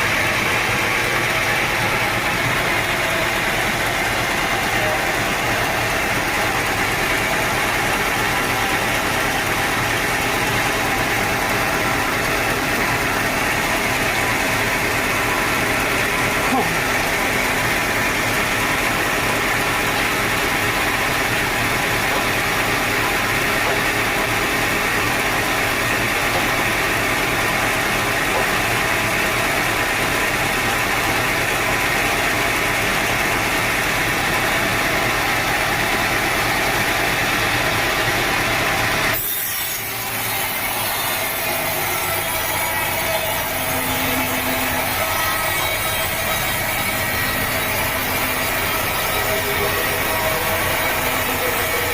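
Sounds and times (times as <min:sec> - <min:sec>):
sawmill saw cutting log: 0:00.0 - 0:51.9.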